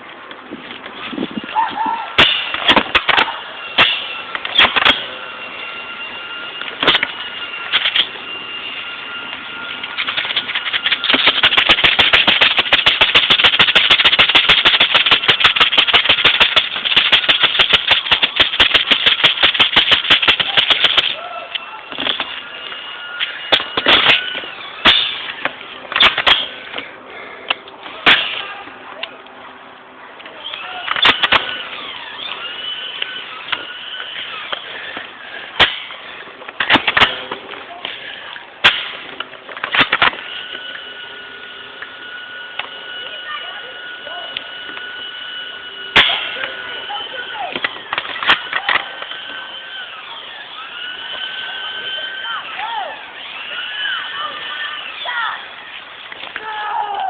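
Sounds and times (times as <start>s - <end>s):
steady high-pitched tone: 1.5s - 36.4s, 39.6s - 56.8s
airsoft gun shots: 2.2s - 5.1s, 10.0s - 21.2s, 23.5s - 25.3s, 28.0s - 28.5s, 30.9s - 31.6s, 35.6s - 35.9s, 36.6s - 37.3s, 38.6s - 40.3s, 46.0s - 46.4s.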